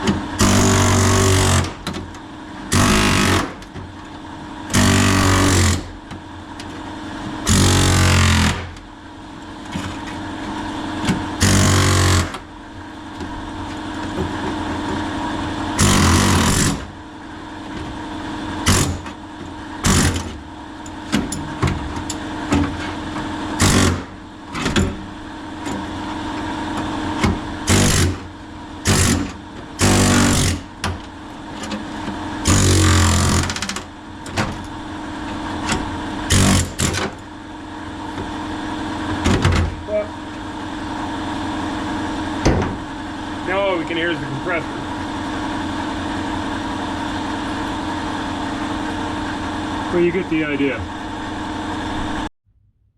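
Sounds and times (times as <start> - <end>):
air compressor running: 0.0 - 52.3
air hammer cutting sheet metal: 0.4 - 1.8, 2.7 - 3.6, 4.7 - 5.9, 7.5 - 8.7, 11.4 - 12.4, 15.8 - 16.9, 18.6 - 19.1, 23.6 - 24.1, 27.6 - 28.2, 28.8 - 30.7, 32.4 - 33.7, 36.3 - 37.1.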